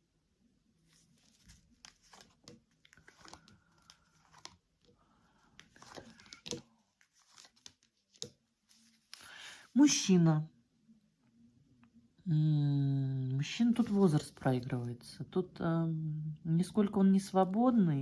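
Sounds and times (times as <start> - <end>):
cards rustling: 0.9 - 9.4, 13.7 - 14.8.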